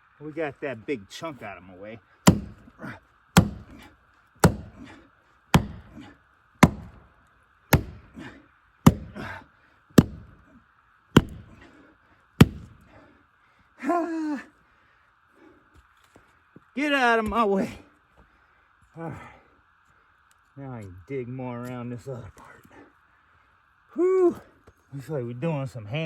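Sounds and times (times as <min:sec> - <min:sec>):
tool chopping into tree root: 0:02.2 - 0:07.1, 0:07.7 - 0:08.3, 0:08.9 - 0:09.4, 0:10.0 - 0:10.4, 0:11.2 - 0:11.6, 0:12.4 - 0:12.8.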